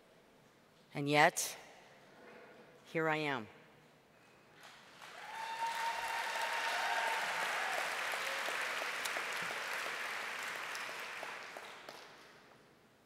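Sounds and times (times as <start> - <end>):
audience applauding: 4.9 - 12.4.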